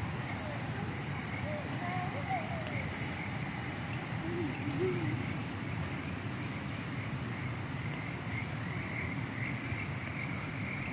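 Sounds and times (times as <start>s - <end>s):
low rumbling haze: 0.0s - 10.9s
faint clicks: 2.6s - 2.8s.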